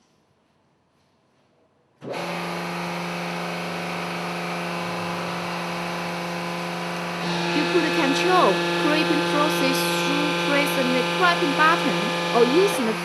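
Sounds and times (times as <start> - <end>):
electric motor and pump humming: 2.0 - 13.0.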